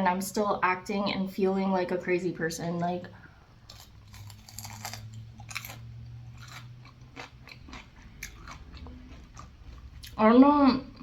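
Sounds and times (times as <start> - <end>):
chewing food with mouth clicks: 3.7 - 10.2.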